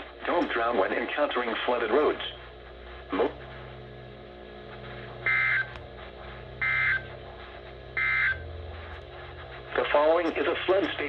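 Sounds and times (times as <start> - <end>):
low hum: 0.0 - 11.0.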